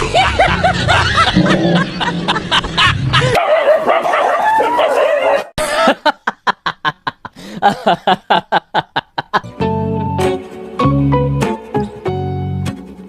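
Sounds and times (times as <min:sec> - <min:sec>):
dog yipping: 0:03.4 - 0:05.5.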